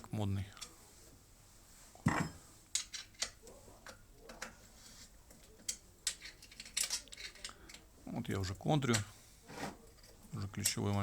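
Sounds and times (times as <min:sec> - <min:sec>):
metallic clicks and clinks: 0:05.3 - 0:07.9.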